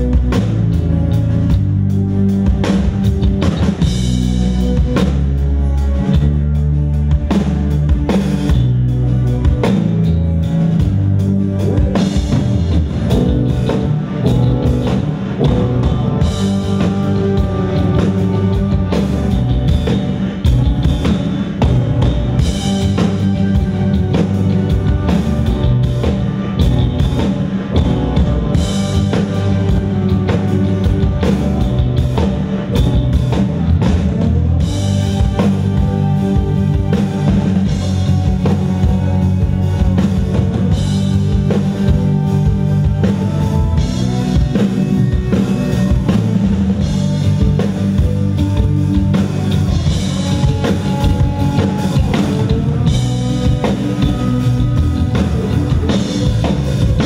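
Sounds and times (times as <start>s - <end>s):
live rock band playing: 0.0s - 57.0s.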